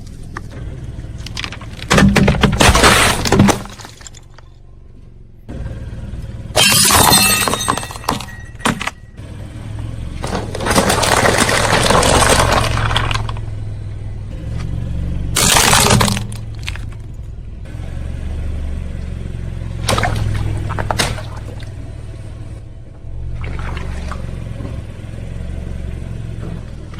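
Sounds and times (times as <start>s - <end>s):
car engine running: 0.0s - 26.9s
tyre crushing crunchy objects: 1.1s - 4.4s, 10.2s - 13.5s, 15.4s - 17.0s.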